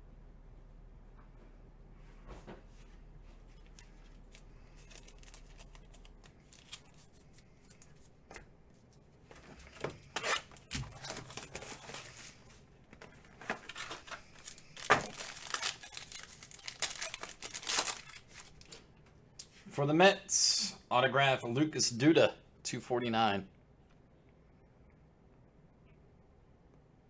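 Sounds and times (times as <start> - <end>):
packaging crinkling and tearing: 3.6 - 8.0, 9.3 - 18.8.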